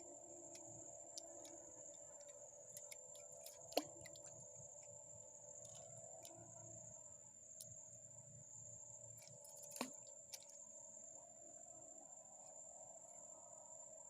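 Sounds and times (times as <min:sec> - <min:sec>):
insect trill: 0:00.0 - 0:14.0
small clicks: 0:00.5 - 0:05.0.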